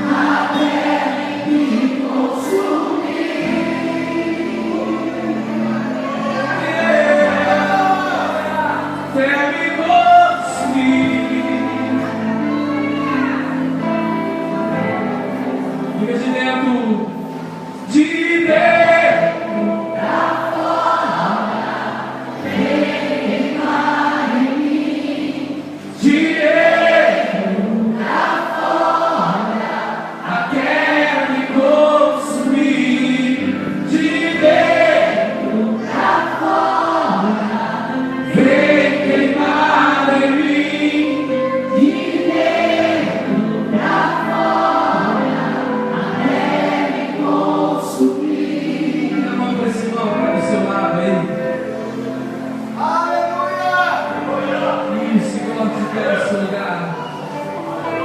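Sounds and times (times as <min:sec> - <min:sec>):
congregation singing: 0:00.0 - 0:58.0
instrumental accompaniment: 0:00.0 - 0:58.0.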